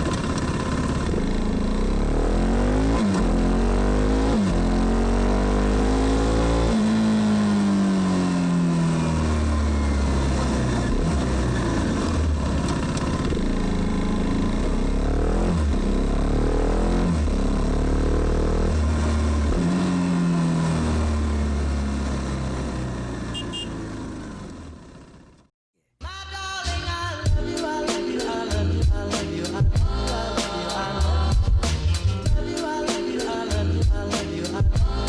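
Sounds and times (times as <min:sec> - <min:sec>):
motorcycle engine accelerating: 0:00.0 - 0:25.5.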